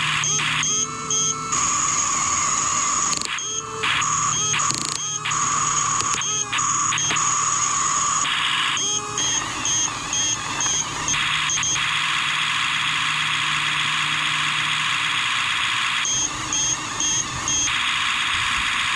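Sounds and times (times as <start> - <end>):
toy bulldozer motor whining: 0.2 - 11.8
high electronic beeping: 0.2 - 17.9.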